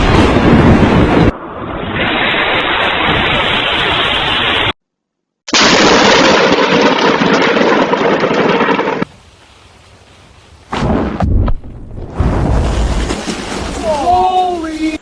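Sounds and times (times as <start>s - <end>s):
thunderclap with deep boom: 0.0s - 4.5s, 10.7s - 13.9s.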